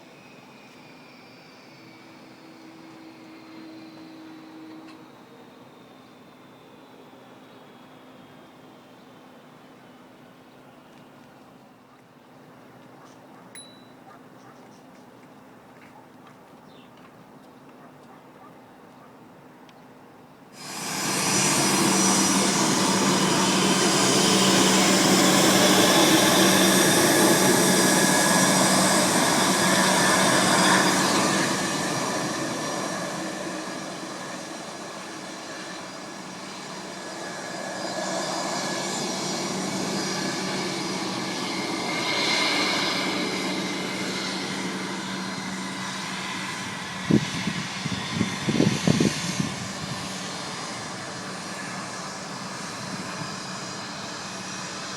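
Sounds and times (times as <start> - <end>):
jet engines running: 20.6 - 54.9.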